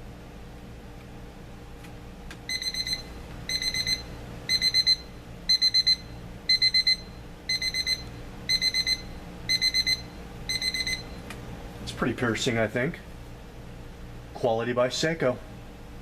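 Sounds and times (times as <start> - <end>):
alarm clock beeping: 2.5 - 11.2.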